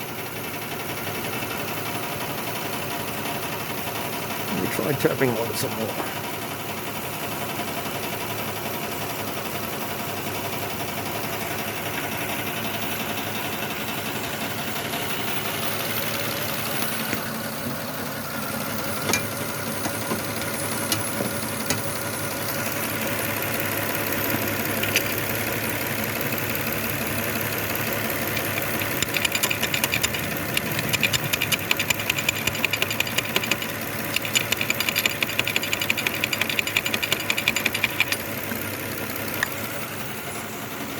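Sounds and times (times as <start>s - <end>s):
car engine idling with misfire: 0.0s - 40.9s
tapping on engine part: 19.0s - 22.0s, 24.3s - 25.4s, 28.0s - 38.3s.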